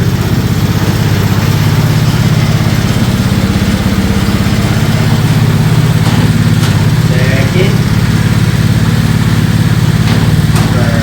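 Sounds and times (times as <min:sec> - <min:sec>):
small engine idling: 0:00.0 - 0:11.0.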